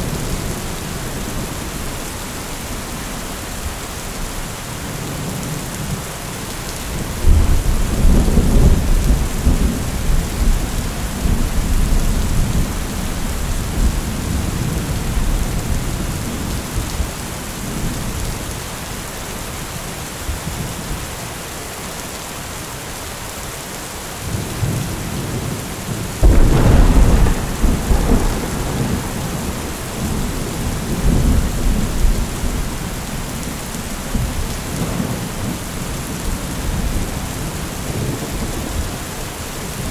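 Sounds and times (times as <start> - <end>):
heavy rain falling: 0.0 - 39.9
rolling thunder: 26.2 - 39.0.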